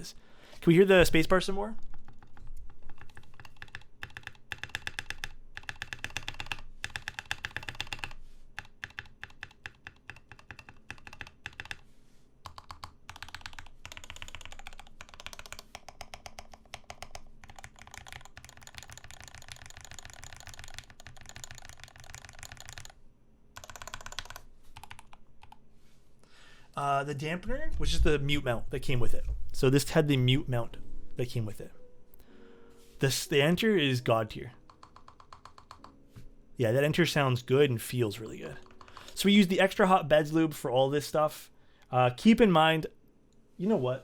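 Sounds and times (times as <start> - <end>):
fast mechanical keyboard typing: 1.8 - 11.8, 12.4 - 23.0, 23.6 - 25.6, 34.5 - 36.0.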